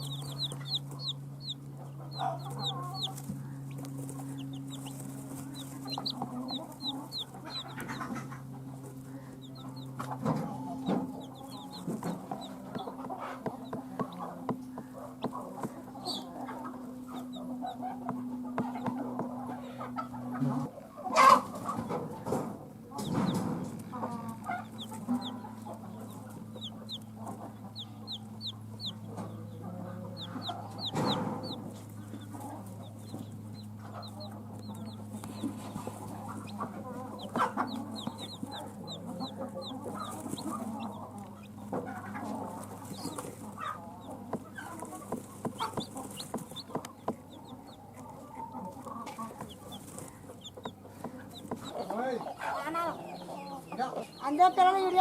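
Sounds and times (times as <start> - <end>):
low hum: 0.0 - 20.9
chicks peeping: 0.0 - 55.0
hen clucking: 0.0 - 55.0.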